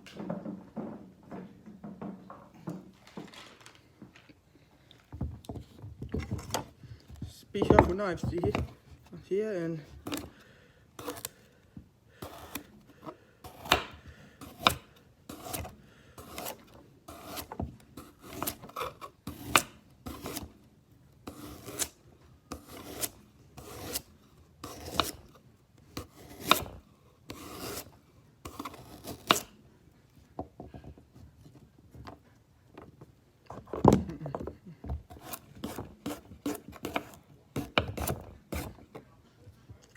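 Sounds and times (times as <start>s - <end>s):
knife cutting on wooden board: 10.0s - 10.3s, 11.0s - 11.4s, 12.2s - 20.6s, 21.3s - 25.4s, 26.0s - 29.6s, 35.1s - 39.0s.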